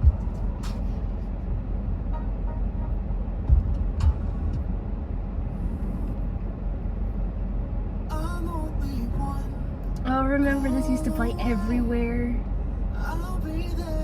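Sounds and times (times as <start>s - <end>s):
low rumble inside car: 0.0s - 14.0s.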